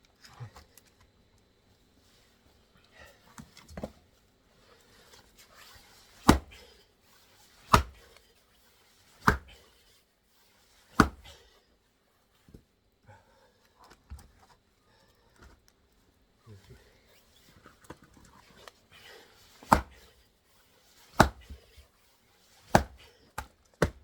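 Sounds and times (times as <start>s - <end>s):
axe striking log: 6.2s - 6.6s, 7.6s - 8.0s, 9.2s - 9.6s, 11.0s - 11.3s, 19.6s - 20.0s, 21.1s - 21.6s, 22.7s - 24.0s.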